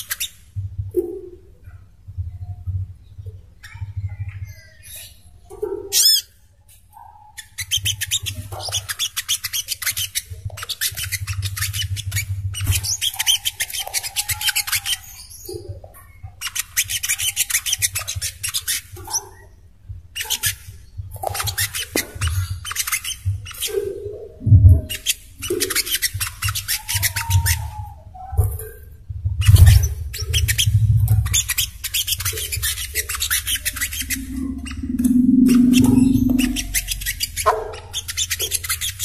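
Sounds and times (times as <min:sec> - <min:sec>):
steady low hum: 0:29.2 - 0:38.2
bird fast chattering trill: 0:29.8 - 0:39.0.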